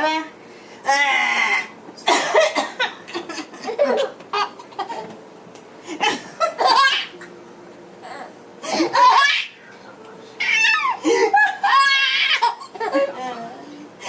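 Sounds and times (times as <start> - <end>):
baby laughing: 3.2 - 5.1, 6.0 - 7.3, 10.7 - 13.1.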